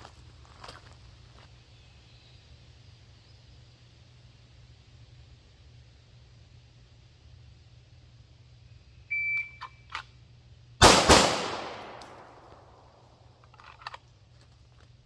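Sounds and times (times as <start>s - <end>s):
pistol shots with echo: 10.8s - 12.9s.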